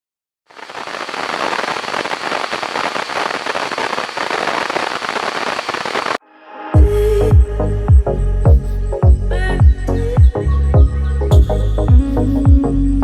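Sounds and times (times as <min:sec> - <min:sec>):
dense crackling noise: 0:00.5 - 0:06.2
electronic music with kick drum: 0:06.8 - 0:12.7.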